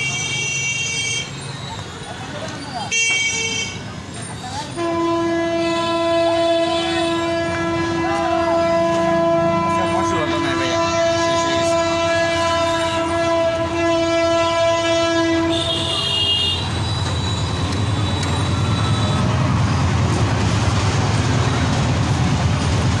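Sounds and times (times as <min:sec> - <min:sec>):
long horn blast: 0:04.7 - 0:19.6.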